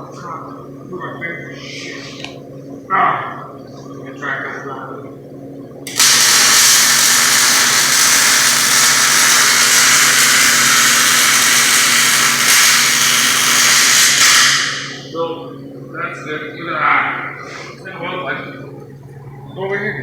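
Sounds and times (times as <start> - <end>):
welding arc sizzling: 5.9 - 15.1.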